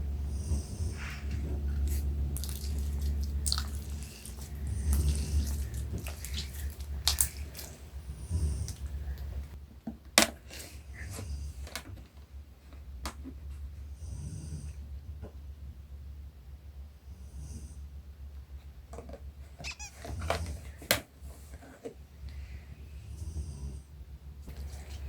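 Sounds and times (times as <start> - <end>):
man snoring: 8.0 - 9.0.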